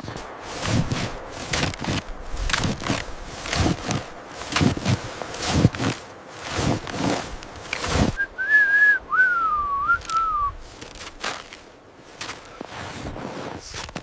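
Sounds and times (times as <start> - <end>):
crunching steps: 0.0 - 8.2, 9.8 - 14.0
person whistling a tune: 8.2 - 10.6.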